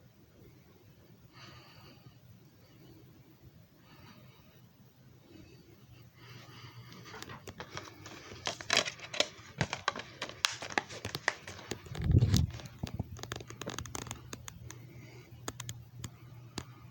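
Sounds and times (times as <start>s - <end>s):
faint low hum: 0.0s - 16.9s
crinkling and clicking handling: 6.9s - 16.9s.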